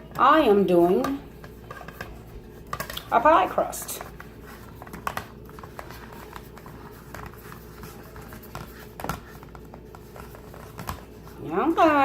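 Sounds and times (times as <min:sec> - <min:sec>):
steady low hum: 0:00.0 - 0:12.0
taps and rustles of pie crust: 0:00.0 - 0:12.0.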